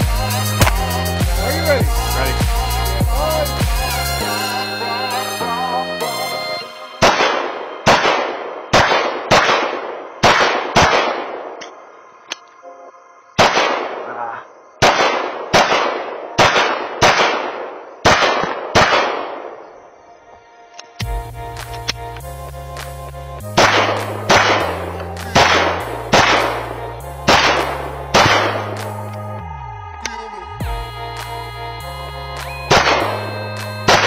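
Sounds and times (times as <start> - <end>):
pistol shots: 7.0 - 11.8, 13.4 - 14.2, 14.8 - 19.7, 23.6 - 29.0, 32.7 - 33.2.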